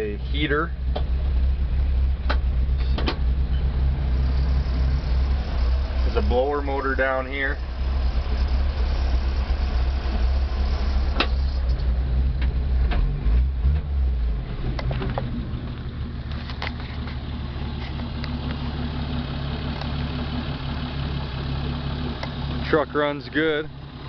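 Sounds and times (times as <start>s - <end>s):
engine idling: 0.0s - 24.0s
sharp clicks from controls: 0.9s - 1.2s, 2.2s - 3.3s, 11.1s - 13.9s, 14.6s - 17.2s, 19.7s - 20.0s, 22.2s - 22.4s.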